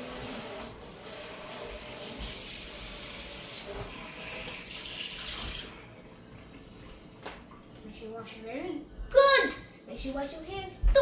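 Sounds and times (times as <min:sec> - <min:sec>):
tap running into sink: 0:03.5 - 0:05.7.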